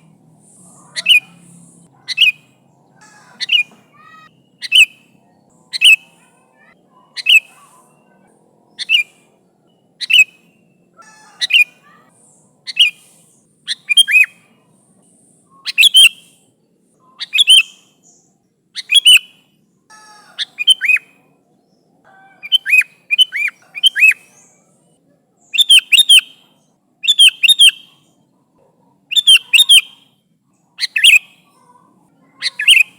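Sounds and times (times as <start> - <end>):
bulbul calling: 0.0 - 9.3, 10.0 - 14.7, 19.9 - 21.3, 29.1 - 30.1, 30.8 - 32.9.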